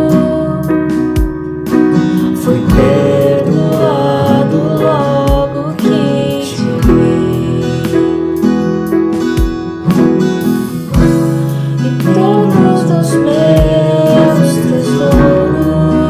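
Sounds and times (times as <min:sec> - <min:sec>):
strummed acoustic guitar: 0:00.0 - 0:16.0
low drum beat: 0:00.9 - 0:08.4, 0:09.2 - 0:12.7, 0:15.1 - 0:15.6.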